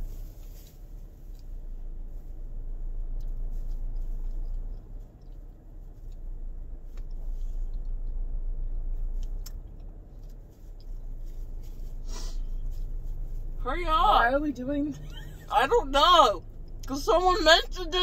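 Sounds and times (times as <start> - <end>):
low rumble inside a car: 0.0 - 18.0
person chewing: 3.2 - 6.3.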